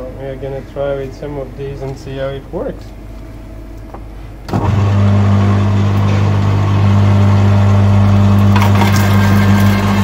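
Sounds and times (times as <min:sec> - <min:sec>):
wood chipper humming: 0:04.5 - 0:10.0.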